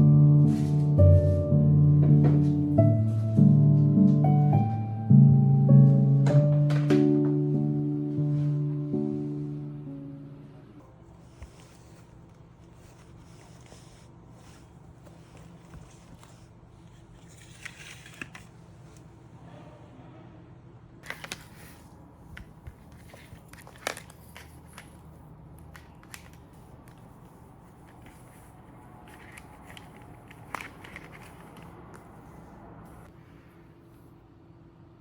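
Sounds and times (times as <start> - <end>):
clicks and rustles of small objects: 21.0 - 32.2.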